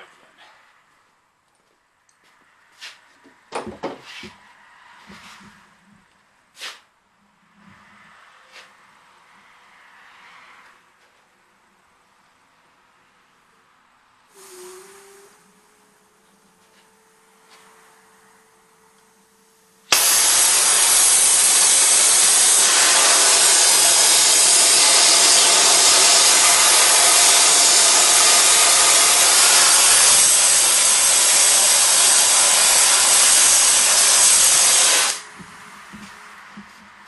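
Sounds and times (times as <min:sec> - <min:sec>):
gas torch hissing: 0:14.3 - 0:18.4, 0:19.4 - 0:35.4.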